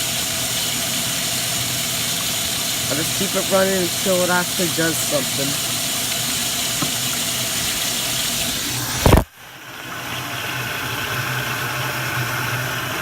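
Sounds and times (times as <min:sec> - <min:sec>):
water running into toilet bowl: 0:00.0 - 0:13.0.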